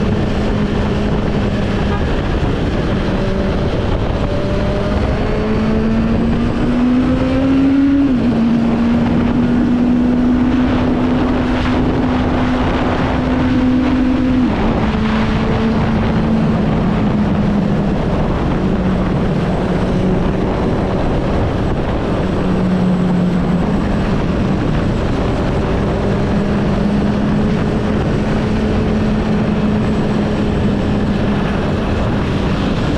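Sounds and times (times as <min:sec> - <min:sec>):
motorcycle engine running: 0:00.0 - 0:32.9.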